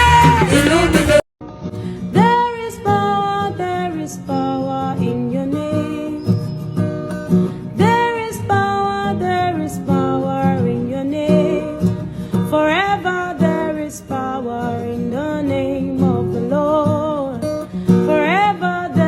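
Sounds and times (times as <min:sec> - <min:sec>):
person singing long notes: 0:00.0 - 0:01.2
acoustic guitar strumming: 0:00.0 - 0:19.0.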